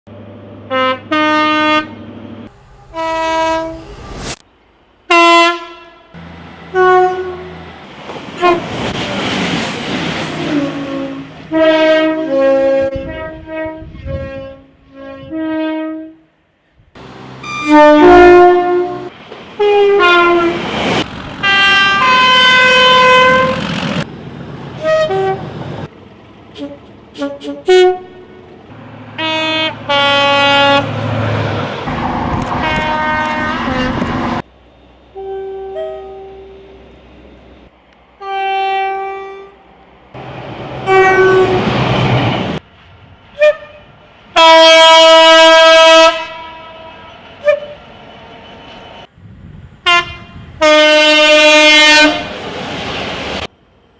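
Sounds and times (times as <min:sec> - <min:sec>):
passing train rushing: 0:00.1 - 0:14.0, 0:17.0 - 0:53.9
train horn blasts: 0:00.7 - 0:04.4, 0:05.1 - 0:07.7, 0:08.4 - 0:08.8, 0:10.4 - 0:16.4, 0:17.4 - 0:20.6, 0:21.4 - 0:23.6, 0:24.8 - 0:25.5, 0:26.6 - 0:28.5, 0:29.1 - 0:30.9, 0:31.8 - 0:34.4, 0:35.1 - 0:36.7, 0:38.2 - 0:39.6, 0:40.8 - 0:41.7, 0:43.4 - 0:47.8, 0:49.8 - 0:52.3.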